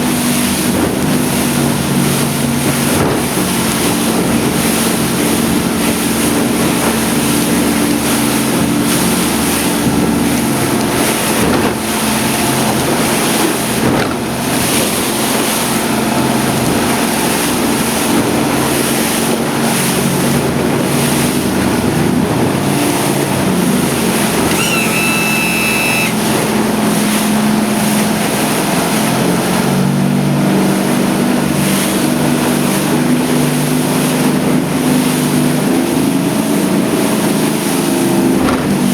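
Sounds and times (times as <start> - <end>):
outboard motor running: 0.0 - 38.9
wind and water rushing: 0.0 - 38.9
brief high-pitched tone: 24.5 - 26.2.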